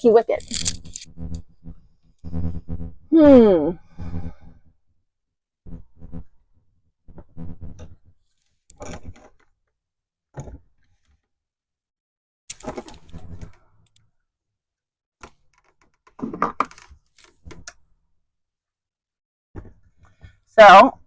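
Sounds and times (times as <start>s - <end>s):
clicks and metal clinks: 0.2s - 1.1s.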